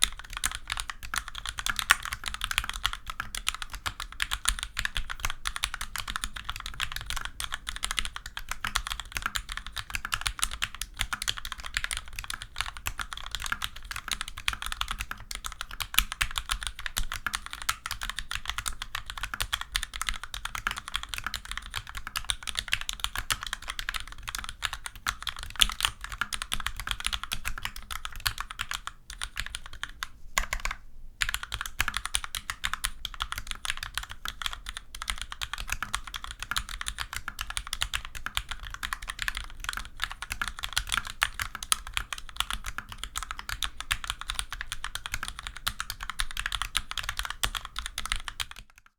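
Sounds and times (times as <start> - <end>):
mechanical keyboard typing: 0.0 - 48.9.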